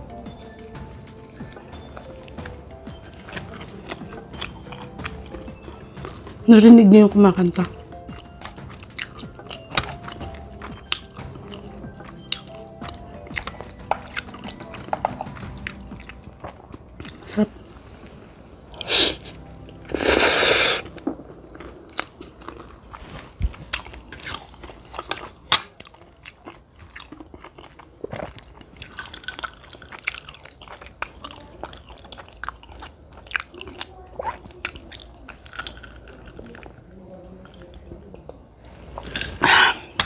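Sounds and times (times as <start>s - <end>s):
person chewing: 0.0s - 6.5s, 7.4s - 40.0s.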